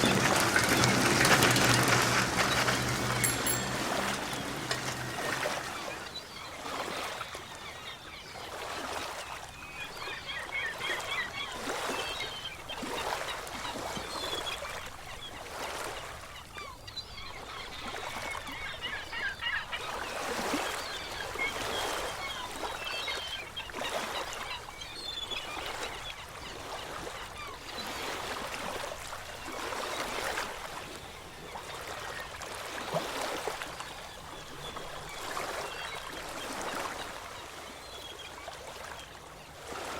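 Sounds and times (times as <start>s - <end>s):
bird calls: 0.0s - 39.9s
waves washing in and out: 0.0s - 39.9s.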